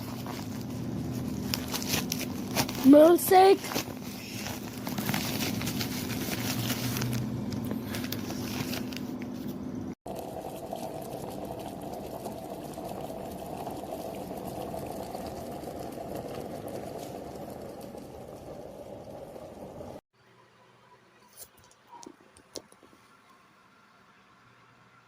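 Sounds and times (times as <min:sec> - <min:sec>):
kettle water boiling: 0:00.0 - 0:09.2, 0:10.1 - 0:20.0.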